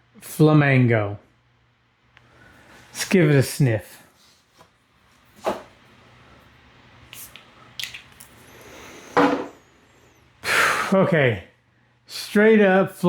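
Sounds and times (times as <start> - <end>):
man sniffing: 10.4 - 11.1.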